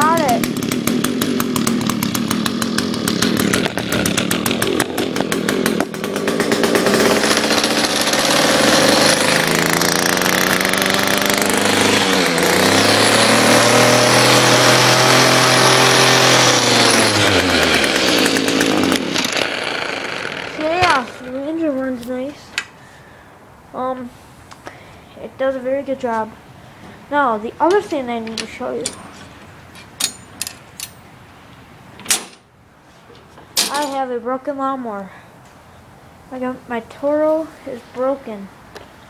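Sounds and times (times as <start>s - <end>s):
string trimmer engine revving: 0.0s - 21.4s.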